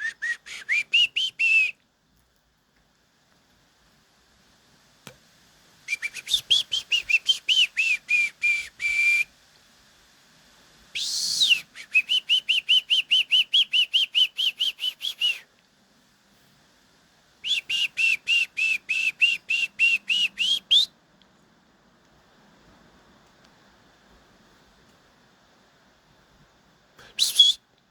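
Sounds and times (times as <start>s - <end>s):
rapid high whistled calls: 0.0s - 1.8s, 5.8s - 9.3s, 10.9s - 15.4s, 17.4s - 20.9s, 27.0s - 27.6s.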